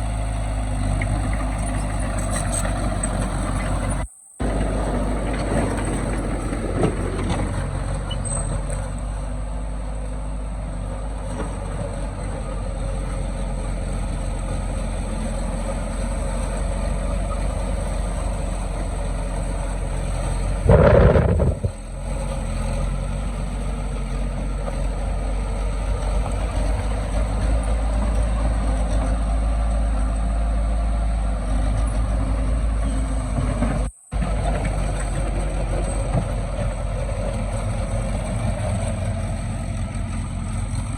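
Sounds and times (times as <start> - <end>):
heavy diesel engine running: 0.0 - 40.9
loud engine burst: 20.5 - 22.3.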